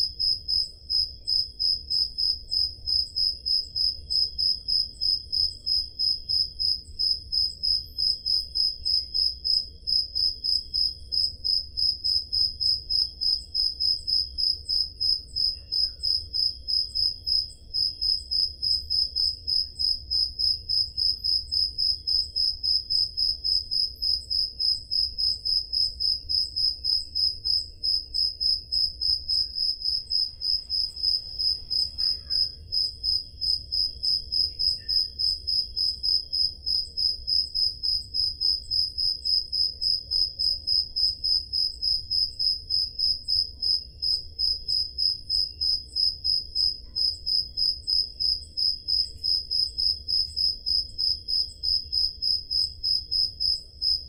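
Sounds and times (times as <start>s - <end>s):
cricket chirping loudly: 0.0s - 54.0s
faint cricket chirping: 0.0s - 54.0s.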